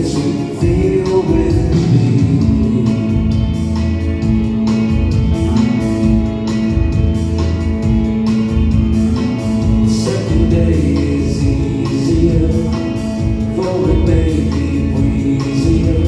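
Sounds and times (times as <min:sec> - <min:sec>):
man singing: 0:00.0 - 0:03.9, 0:09.7 - 0:16.0
bass: 0:00.0 - 0:16.0
drums: 0:00.0 - 0:16.0
guitar: 0:00.0 - 0:16.0.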